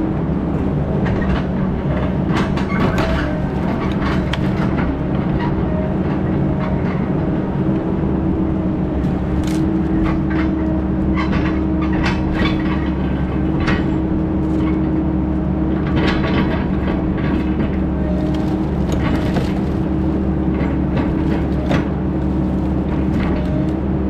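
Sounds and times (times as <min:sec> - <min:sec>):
heavy engine running: 0:00.0 - 0:24.0
clanks and rattles: 0:01.0 - 0:07.2, 0:15.6 - 0:23.9.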